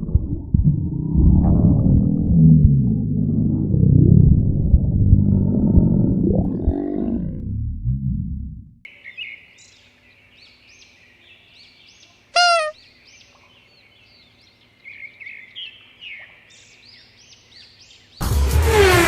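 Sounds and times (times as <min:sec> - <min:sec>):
low stomach rumble: 0:00.0 - 0:08.8
birds chirping: 0:08.9 - 0:18.2
short loud squeal: 0:12.4 - 0:12.7.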